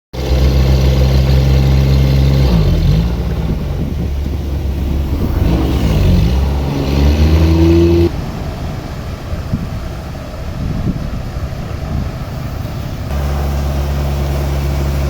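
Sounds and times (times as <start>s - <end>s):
heavy engine running: 0.2s - 15.0s.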